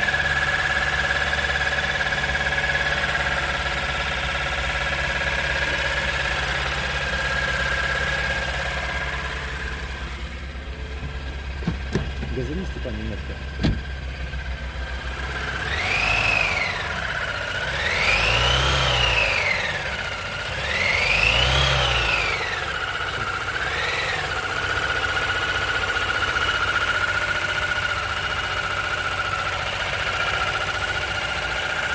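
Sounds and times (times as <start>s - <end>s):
car engine revving: 2.4s - 25.6s.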